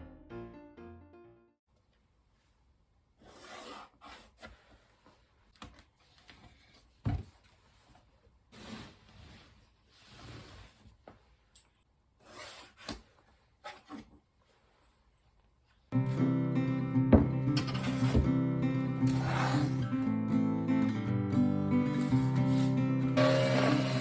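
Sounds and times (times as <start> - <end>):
rubbing and scraping on wood: 19.1 - 19.9.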